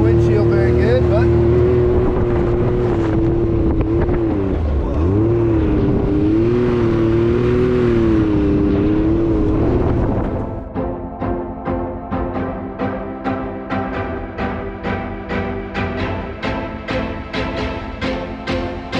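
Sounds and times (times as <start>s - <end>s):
engine running under load: 0.0s - 10.7s
tire and track noise: 0.0s - 10.8s.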